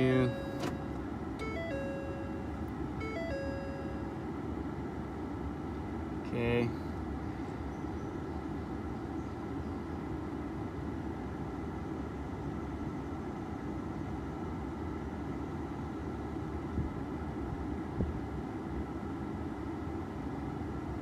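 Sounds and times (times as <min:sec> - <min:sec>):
faint steady whine: 0:00.0 - 0:07.7
air-conditioning blower whooshing: 0:00.0 - 0:08.8.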